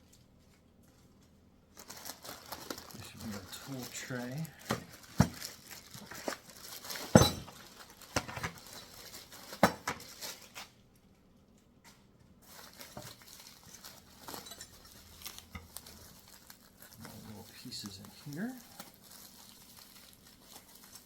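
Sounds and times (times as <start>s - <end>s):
metal tools clinking and knocking: 7.0s - 7.6s, 14.2s - 15.6s.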